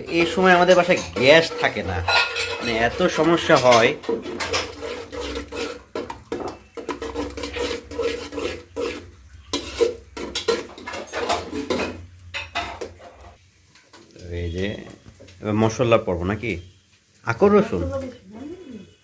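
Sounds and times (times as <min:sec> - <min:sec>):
spoon scraping cooking pan: 0:00.0 - 0:14.2.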